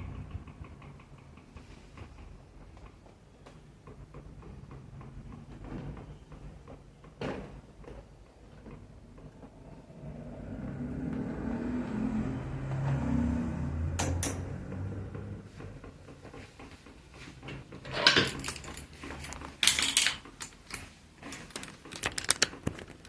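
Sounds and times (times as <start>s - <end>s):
irregular clicks: 0.0s - 7.2s, 13.9s - 23.0s
table fan humming: 0.0s - 23.0s.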